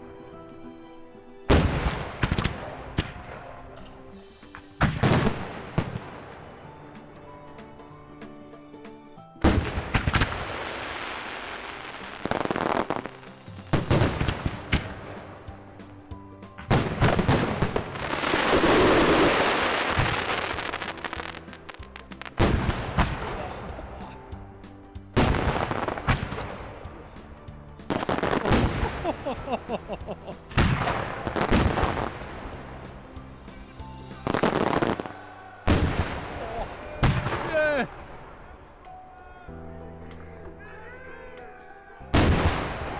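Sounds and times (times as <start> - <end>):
fireworks hissing: 1.5 - 8.4, 9.4 - 38.4
fireworks crackling: 1.5 - 39.0, 42.1 - 42.9
fireworks bangs: 4.8 - 6.7, 9.4 - 16.0, 16.6 - 24.2, 25.2 - 32.8, 34.2 - 38.0.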